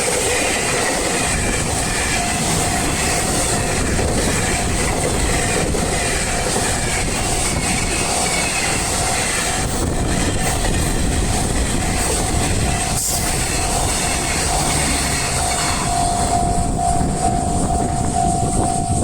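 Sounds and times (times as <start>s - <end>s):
train rumble and wheel clatter: 0.0s - 19.0s
level crossing bell ringing: 15.4s - 19.0s.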